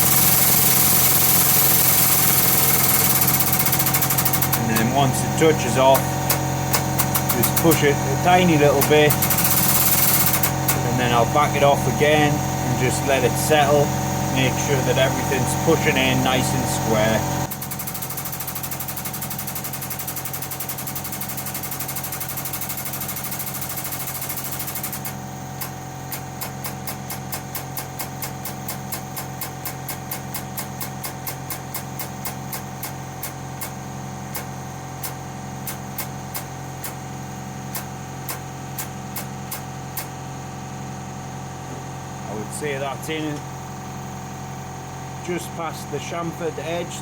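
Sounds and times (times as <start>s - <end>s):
rapid clicks: 0.0s - 11.0s, 17.4s - 37.0s, 37.7s - 40.2s
air hissing: 0.0s - 28.5s.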